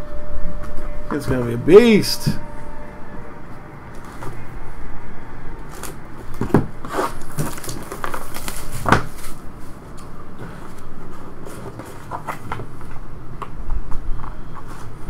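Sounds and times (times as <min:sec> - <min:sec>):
steady low hum: 0:00.0 - 0:15.0
cards and packaging handled: 0:05.7 - 0:13.0.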